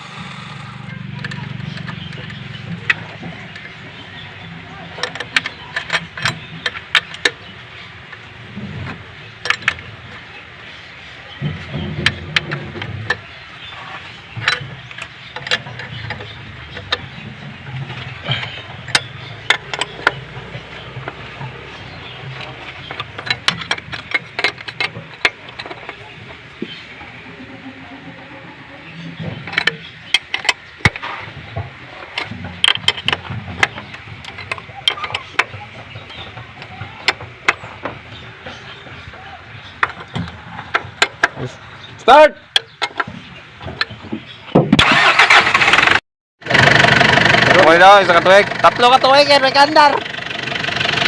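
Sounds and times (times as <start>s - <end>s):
sharp metallic clicks: 0.0s - 7.5s, 14.3s - 26.3s, 29.4s - 31.4s
vehicle engine rumble: 0.0s - 51.0s
tools clicking and knocking: 4.8s - 7.5s, 8.8s - 9.9s, 11.4s - 13.3s, 14.3s - 26.8s, 29.2s - 41.6s, 42.5s - 44.8s.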